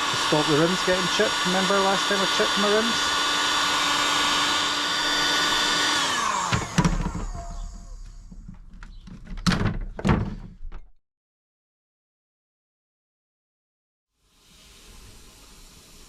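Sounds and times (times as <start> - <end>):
fan winding down: 0.0 - 8.4
heat gun blowing: 0.0 - 8.4, 14.3 - 16.0.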